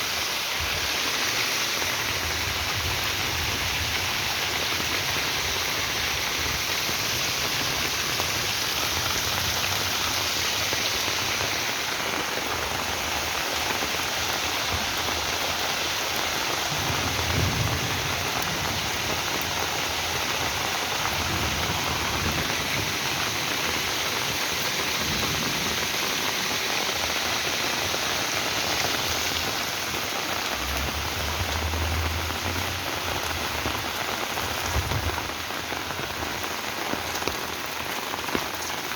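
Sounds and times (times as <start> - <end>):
rain falling: 0.0 - 38.9
low rumbles: 30.4 - 35.3.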